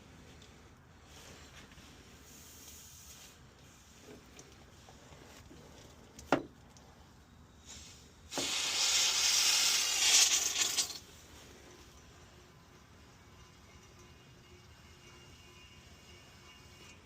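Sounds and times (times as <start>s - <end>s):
pressurised hissing: 7.6s - 11.0s.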